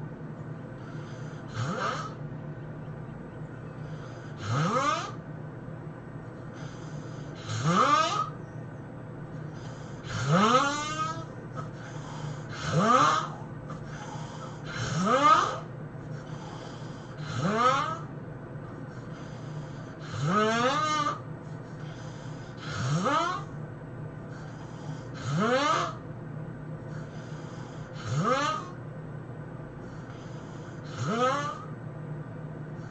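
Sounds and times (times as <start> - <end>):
quiet breathing: 0.0 - 5.3, 6.2 - 7.6, 8.3 - 17.4, 18.0 - 20.4, 21.1 - 26.0, 26.8 - 28.2, 29.6 - 31.8, 32.5 - 32.9
person snoring heavily: 0.8 - 2.2, 3.9 - 5.2, 6.6 - 8.4, 9.5 - 18.1, 19.0 - 21.2, 21.8 - 23.5, 24.4 - 26.0, 27.0 - 28.8, 30.0 - 31.7.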